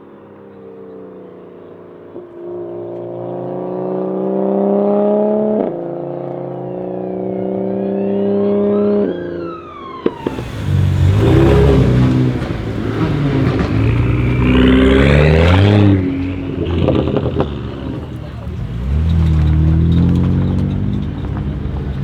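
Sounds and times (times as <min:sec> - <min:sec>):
car engine revving: 0:02.6 - 0:22.0
exhaust pop: 0:09.8 - 0:22.0.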